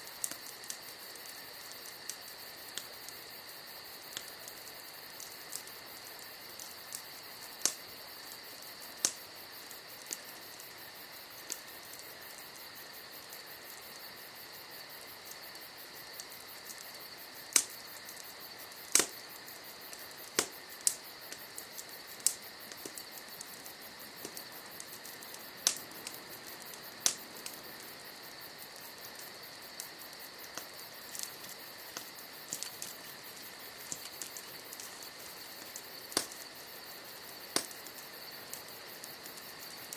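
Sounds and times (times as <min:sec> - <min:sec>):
campfire crackling and popping: 0:00.0 - 0:39.9
crickets trilling: 0:00.0 - 0:39.9.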